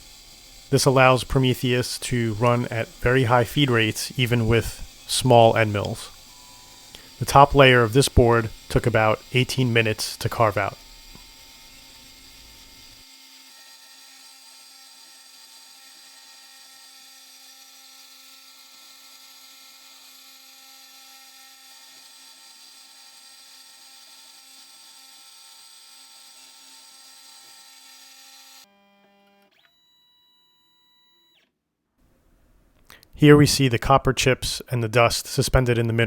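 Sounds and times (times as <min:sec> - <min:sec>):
high-pitched spindle whine: 0:00.0 - 0:13.0.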